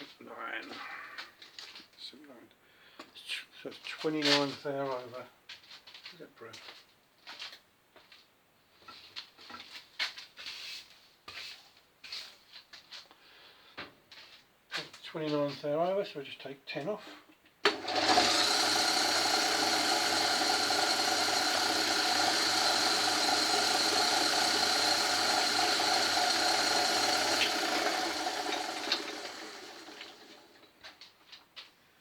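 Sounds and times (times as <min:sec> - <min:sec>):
lathe running with whine: 0:17.7 - 0:30.7.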